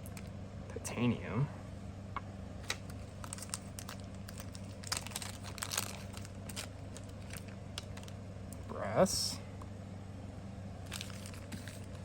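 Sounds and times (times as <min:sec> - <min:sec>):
steady low hum: 0:00.0 - 0:12.0
plastic bags crinkling: 0:02.6 - 0:08.2, 0:10.8 - 0:12.0.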